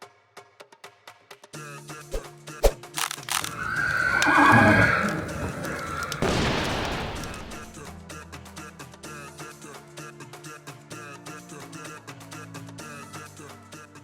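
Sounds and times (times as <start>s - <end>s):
background music: 1.7s - 14.0s
horse whinny: 3.4s - 6.4s.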